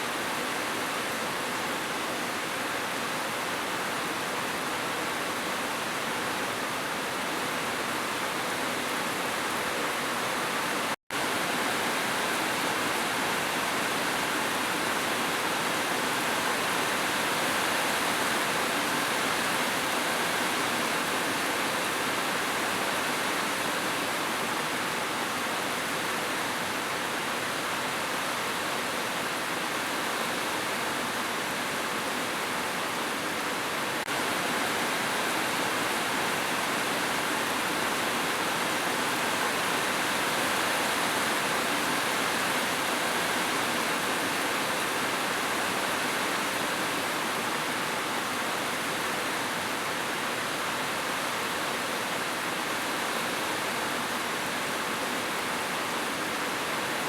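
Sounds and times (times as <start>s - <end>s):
rushing water: 0.0s - 57.0s.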